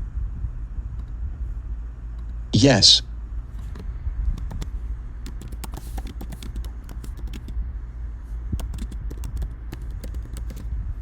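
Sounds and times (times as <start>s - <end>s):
low steady hum: 0.0s - 11.0s
keyboard key clicks: 3.6s - 4.7s, 5.3s - 7.6s, 8.6s - 10.7s.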